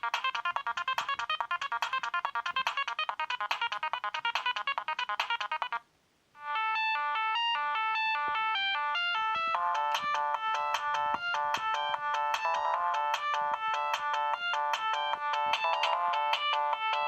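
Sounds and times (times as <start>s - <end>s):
ringtone of fast repeated notes: 0.0s - 5.8s, 6.4s - 17.0s
slow electronic ringtone melody: 6.4s - 17.0s.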